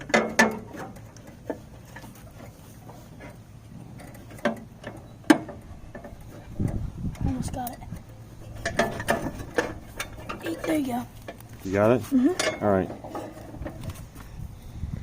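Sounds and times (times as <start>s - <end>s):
sharp metal clicks and knocks: 0.0s - 11.6s.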